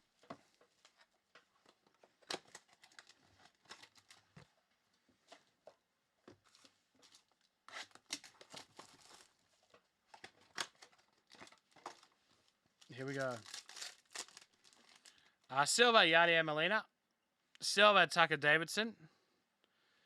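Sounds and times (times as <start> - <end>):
wrappers crinkling: 0.2 - 4.6, 6.4 - 15.4
packaging being torn open: 2.2 - 4.2, 7.0 - 9.4, 10.1 - 12.2, 13.1 - 15.2.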